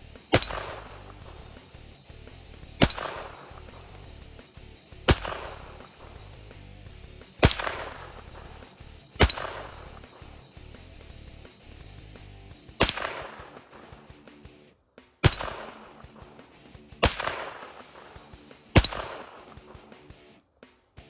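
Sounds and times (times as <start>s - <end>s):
pistol shots with echo: 0.0s - 1.9s, 2.6s - 6.4s, 7.2s - 10.5s, 12.7s - 14.2s, 15.2s - 19.9s.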